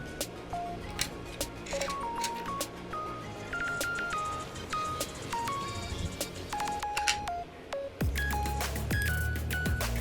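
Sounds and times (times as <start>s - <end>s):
electronic music with deep bass: 8.0s - 10.0s.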